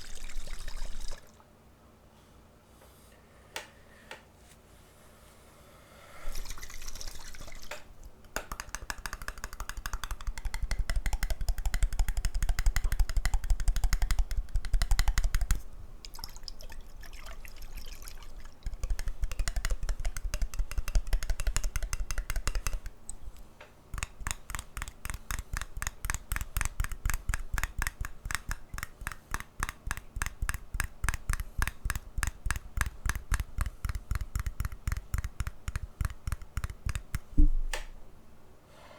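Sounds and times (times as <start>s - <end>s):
rapid short clicks: 8.4s - 15.6s, 23.9s - 37.4s
water poured by hand: 16.1s - 18.7s.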